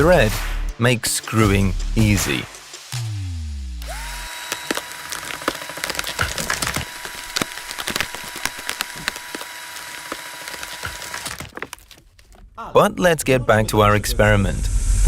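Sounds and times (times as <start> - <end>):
screwdriver motor whine: 3.8 - 11.5
wood cracking: 3.9 - 12.6.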